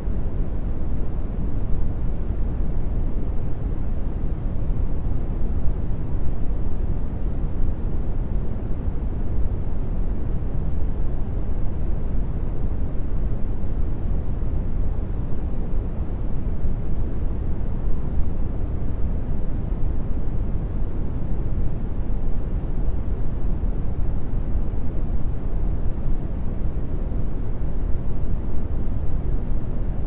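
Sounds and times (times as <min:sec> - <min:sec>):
brown noise low rumble: 0:00.0 - 0:30.0.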